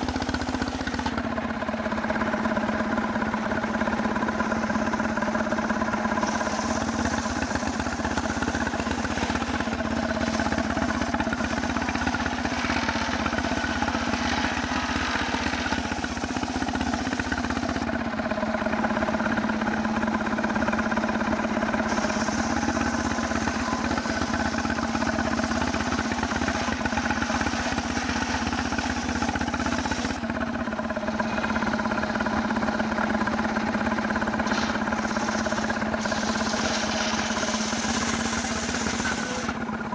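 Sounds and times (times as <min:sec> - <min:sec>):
chainsaw running: 0:00.0 - 0:39.9
hiss of chainsaw cutting wood: 0:04.5 - 0:18.0, 0:21.5 - 0:30.4, 0:33.2 - 0:39.9.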